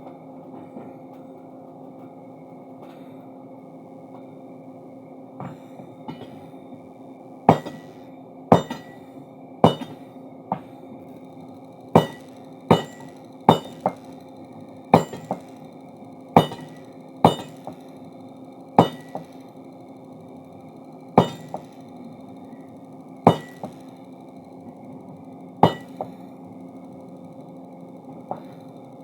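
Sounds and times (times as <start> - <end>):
hammer ringing on steel: 7.5 - 9.0, 9.6 - 10.1, 12.0 - 14.1, 14.9 - 15.6, 16.4 - 17.8, 18.8 - 19.4, 21.2 - 21.8, 23.3 - 23.9, 25.6 - 26.2.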